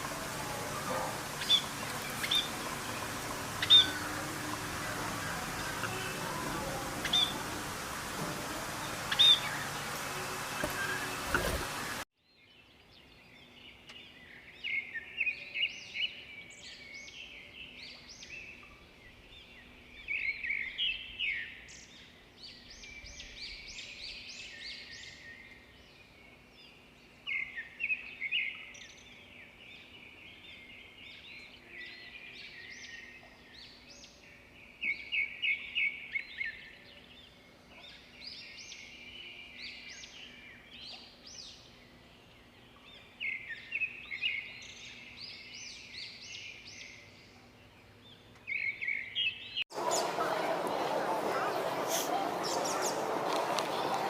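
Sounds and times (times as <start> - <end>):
birds chirping and calling: 0.0 - 12.0, 48.3 - 54.0.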